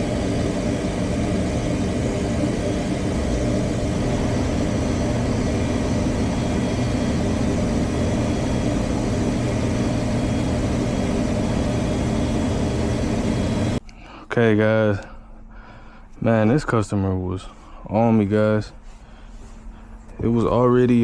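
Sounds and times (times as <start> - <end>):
rushing airflow: 0.0 - 13.8
furnace mechanical hum: 0.0 - 21.0.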